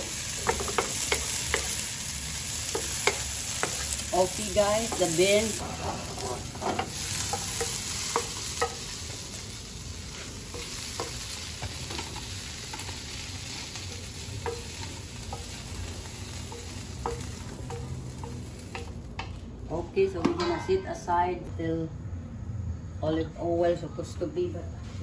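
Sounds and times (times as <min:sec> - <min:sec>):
beans sizzling in oil: 0:00.0 - 0:19.5.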